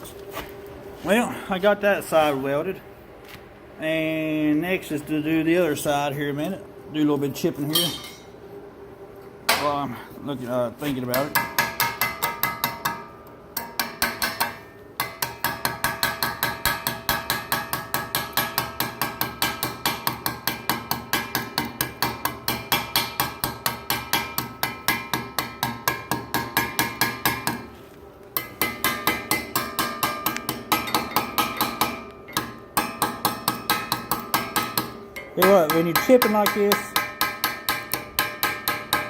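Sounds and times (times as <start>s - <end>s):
hammer tapping on steel: 11.1s - 27.7s, 28.4s - 39.0s
steel workpiece ringing: 28.4s - 39.0s.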